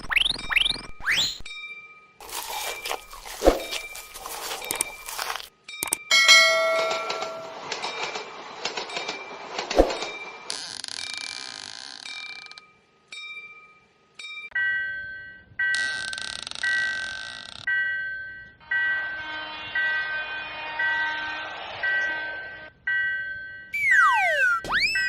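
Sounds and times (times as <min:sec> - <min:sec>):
two-note electronic crossing chime: 0:06.1 - 0:07.5, 0:23.8 - 0:25.0.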